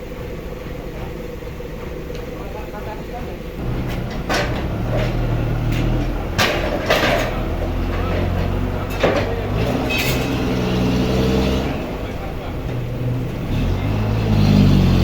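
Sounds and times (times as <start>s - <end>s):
sawmill machinery drone: 0.0s - 15.0s.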